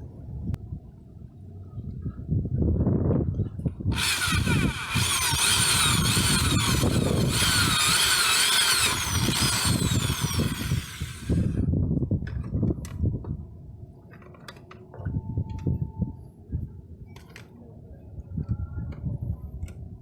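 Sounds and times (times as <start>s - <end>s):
power tool whining: 3.9s - 11.6s.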